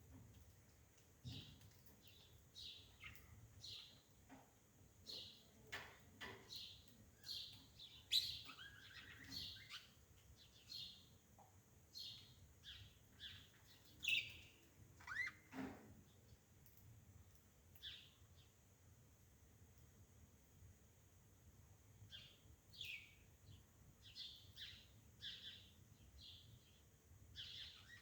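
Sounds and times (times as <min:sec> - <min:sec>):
birds chirping: 0:12.0 - 0:15.5.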